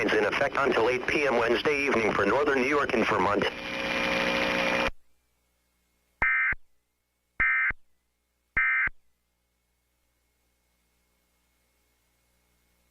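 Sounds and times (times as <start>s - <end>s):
broadcast audio: 0.0s - 5.0s.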